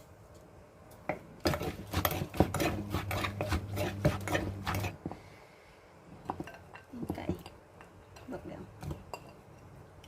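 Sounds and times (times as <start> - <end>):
pestle scraping in mortar: 1.4 - 5.2.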